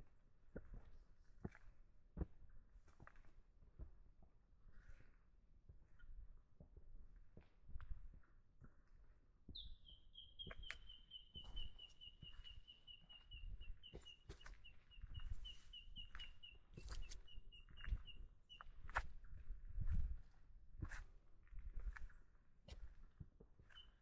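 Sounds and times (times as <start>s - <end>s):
footsteps: 11.3s - 18.2s.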